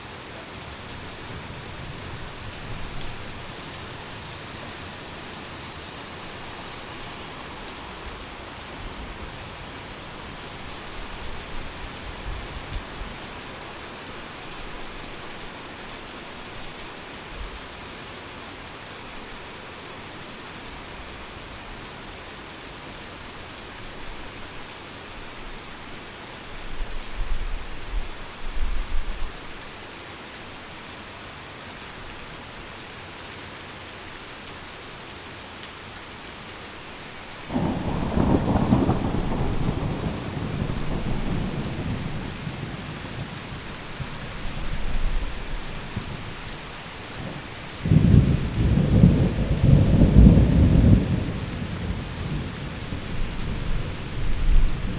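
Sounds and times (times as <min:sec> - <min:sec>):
heavy rain: 0:00.0 - 0:54.9
thunder: 0:37.5 - 0:43.3, 0:47.8 - 0:54.9.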